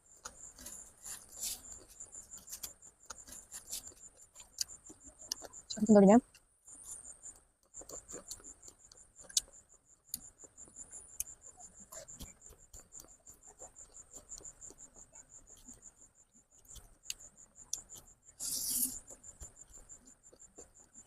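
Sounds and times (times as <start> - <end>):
cricket chirping: 0.0 - 21.0
eating clicks and smacks: 1.7 - 6.4, 7.3 - 15.9, 16.5 - 18.0.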